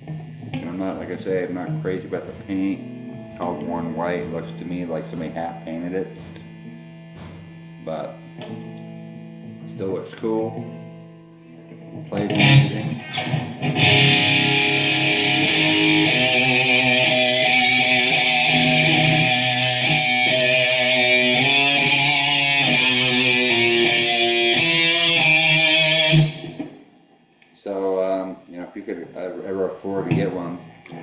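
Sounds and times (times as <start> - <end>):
distorted electric guitar: 0.0 - 27.0, 30.0 - 31.0.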